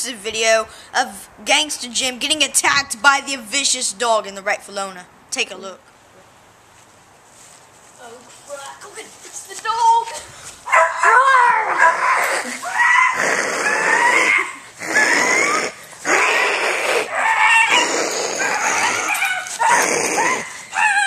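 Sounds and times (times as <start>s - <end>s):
dog yelping and whining: 10.7s - 21.0s.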